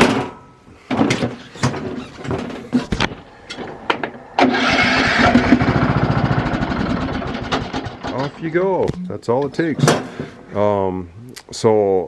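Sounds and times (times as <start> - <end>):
clunks and clicks: 0.0 - 4.8
small mower engine running: 0.9 - 8.1.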